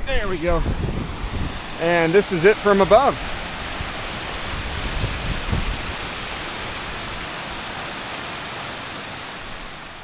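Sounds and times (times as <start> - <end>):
wind rumble on microphone: 0.0 - 7.3
waterfall rushing: 0.3 - 10.0.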